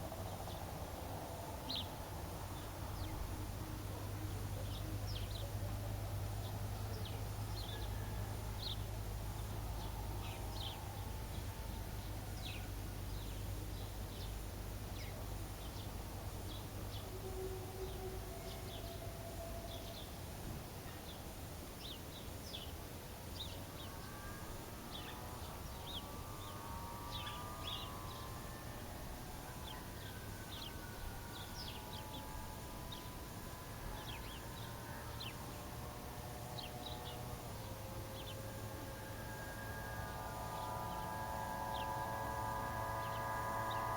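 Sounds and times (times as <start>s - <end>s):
low steady rumble: 0.0s - 43.9s
distant small engine: 23.7s - 43.9s
birds chirping: 24.9s - 28.4s.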